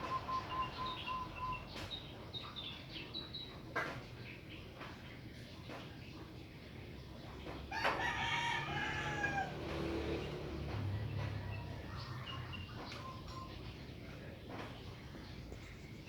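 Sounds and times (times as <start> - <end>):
faint bird chirps: 0.0 - 3.5
rooster crowing: 7.7 - 10.0.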